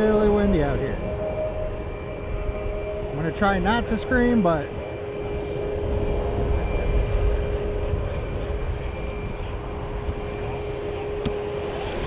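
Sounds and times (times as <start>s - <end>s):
jet engines humming: 0.0s - 12.0s
wind buffeting microphone: 0.0s - 12.0s.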